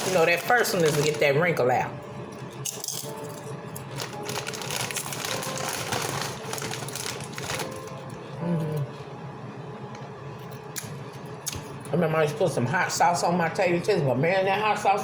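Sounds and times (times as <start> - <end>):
chewing crunchy potato chips: 3.8 - 8.0.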